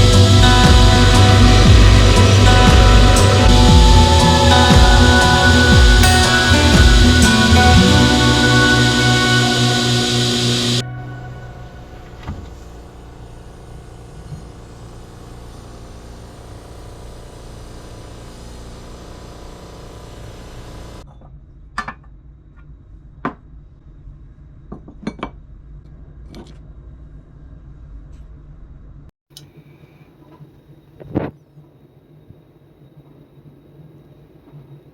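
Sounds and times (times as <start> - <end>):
mechanical running hum: 0.0 - 21.0.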